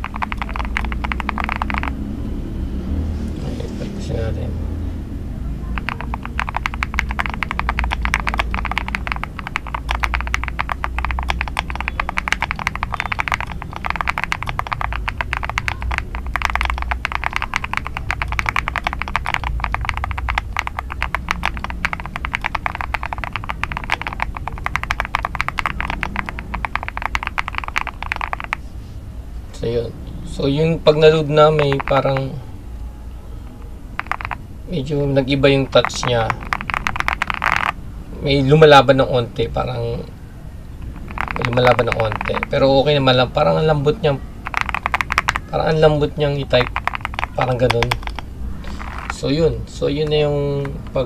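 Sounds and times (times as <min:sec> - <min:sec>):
mechanical keyboard typing: 0:00.0 - 0:02.1, 0:05.7 - 0:28.7, 0:31.0 - 0:32.4, 0:33.9 - 0:34.5, 0:35.3 - 0:37.8, 0:40.8 - 0:49.4
low steady rumble: 0:00.0 - 0:51.0.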